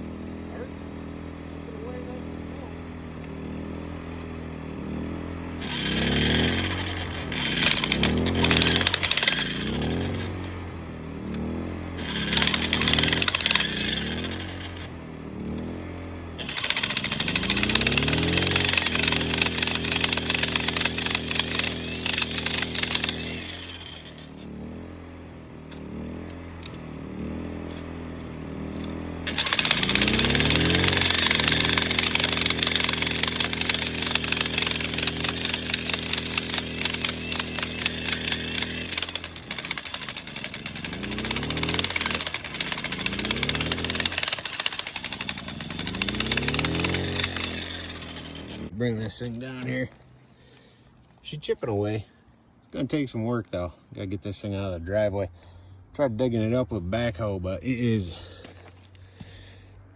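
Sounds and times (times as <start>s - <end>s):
jackhammer motor humming: 1.5s - 50.7s
jackhammer breaking rock: 5.4s - 10.6s, 11.3s - 15.7s, 16.4s - 24.5s, 28.6s - 50.0s.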